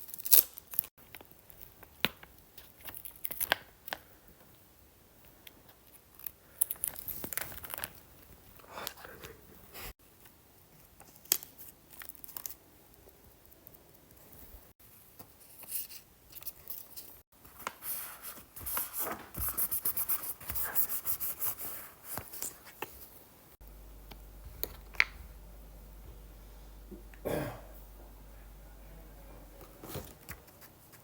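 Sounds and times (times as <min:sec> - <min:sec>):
packaging rustling and scraping: 0:29.7 - 0:31.0.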